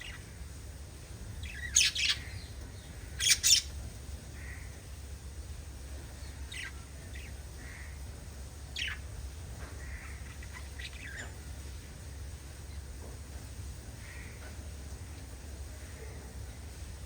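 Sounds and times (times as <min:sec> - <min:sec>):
lovebirds chirping: 0:00.0 - 0:00.6, 0:01.2 - 0:03.8, 0:06.0 - 0:11.6
steady low hum: 0:00.0 - 0:17.0.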